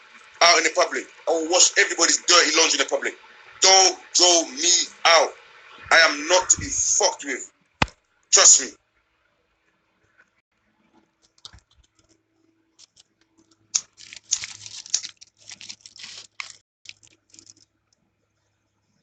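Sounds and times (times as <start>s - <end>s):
scratchy clicks and rustles: 10.0s - 19.0s.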